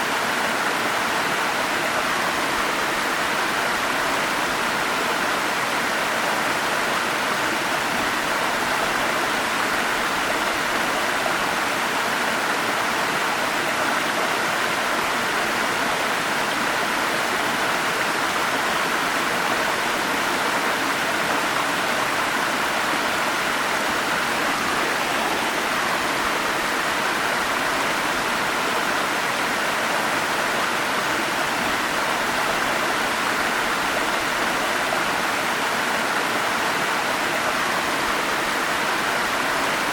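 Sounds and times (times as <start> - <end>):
stream rushing over small falls: 0.0 - 39.9.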